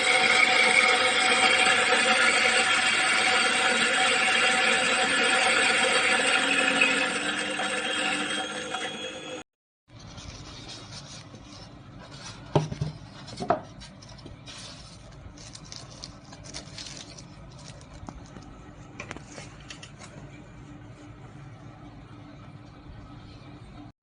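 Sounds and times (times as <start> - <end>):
small objects pattering and clicking: 14.8 - 19.9.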